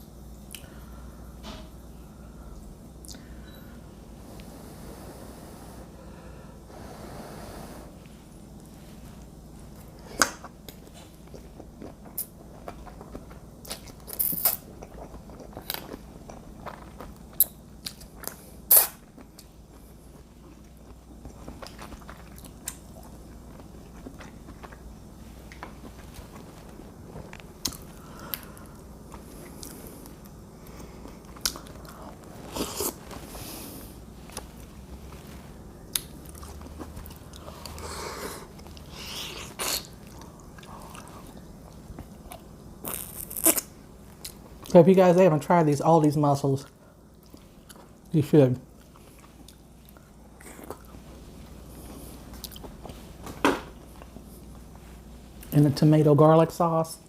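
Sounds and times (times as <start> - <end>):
person chewing and biting: 9.8 - 34.8, 35.9 - 44.5.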